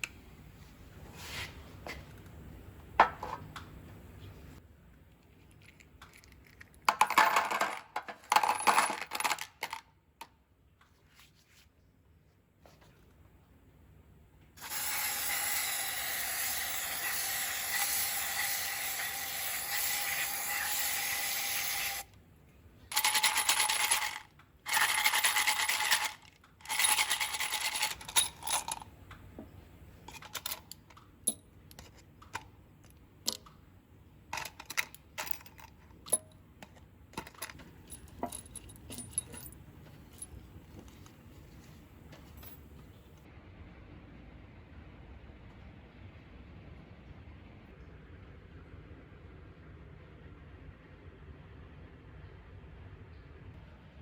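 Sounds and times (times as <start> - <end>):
small motor-driven tool running: 14.6 - 22.1
metallic clinks and clatter: 22.9 - 28.9, 30.1 - 33.5, 34.3 - 43.0.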